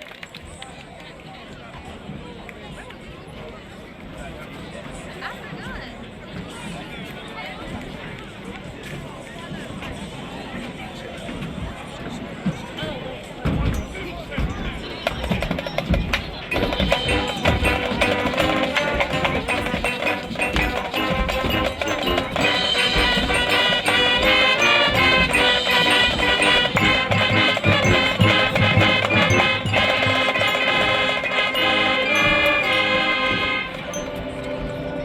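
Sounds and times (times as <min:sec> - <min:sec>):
drums: 0:15.0 - 0:34.0
marching band playing: 0:15.5 - 0:34.4.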